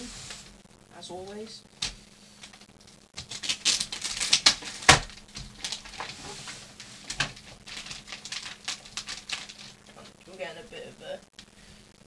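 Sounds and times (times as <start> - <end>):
packing material rustling and crackling: 1.2 - 10.3.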